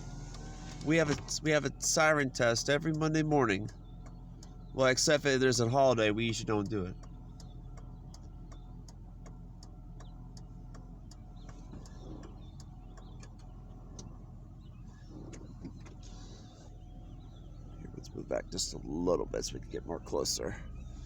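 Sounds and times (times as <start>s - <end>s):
car engine humming: 0.0s - 21.0s
light ticks: 0.3s - 14.2s.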